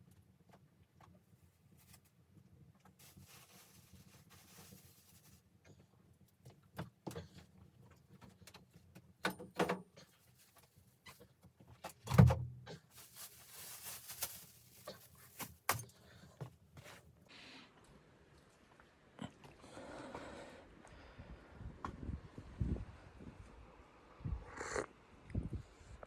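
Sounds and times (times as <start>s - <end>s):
rustling or scraping: 2.9s - 5.6s, 12.8s - 17.1s.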